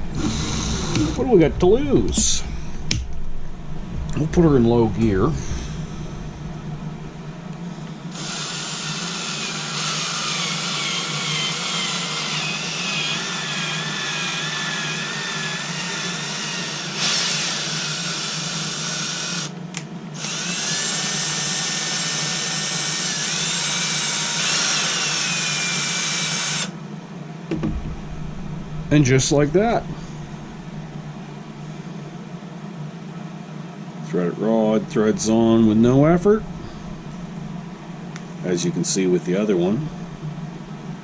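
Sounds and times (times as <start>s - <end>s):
hand drill motor whining: 8.1s - 19.6s, 20.2s - 26.7s.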